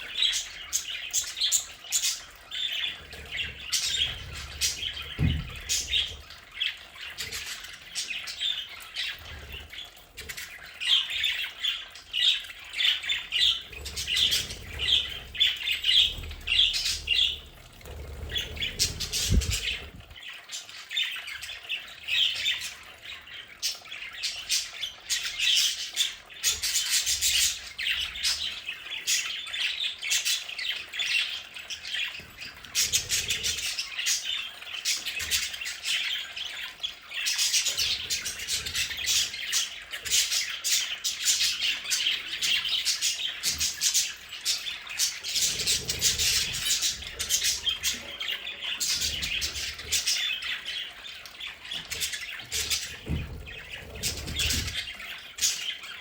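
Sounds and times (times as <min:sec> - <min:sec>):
budgerigars chattering and squawking: 0:00.0 - 0:56.0.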